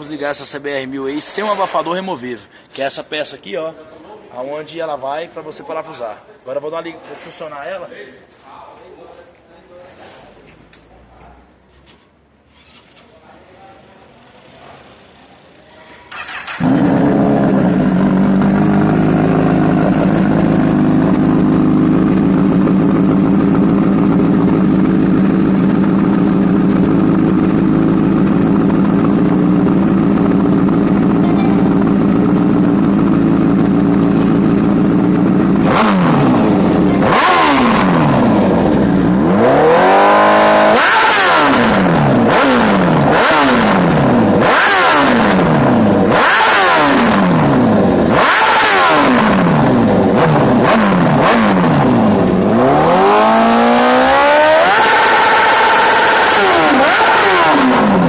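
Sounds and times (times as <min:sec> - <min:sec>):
motorcycle engine idling and revving: 0:15.9 - 0:58.0.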